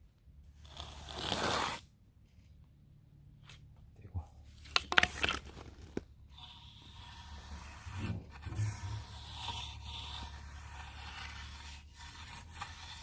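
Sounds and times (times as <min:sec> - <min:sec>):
trowel scraping wet mortar: 0:00.6 - 0:01.8, 0:06.3 - 0:13.0.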